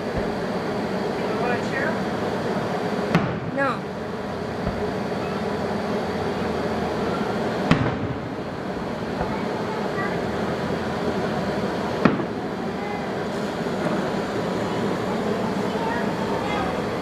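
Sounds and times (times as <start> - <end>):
fireworks bangs: 0.0 - 1.5, 2.2 - 3.8, 4.4 - 6.0, 7.3 - 9.9, 11.2 - 12.6
background murmur: 0.0 - 17.0.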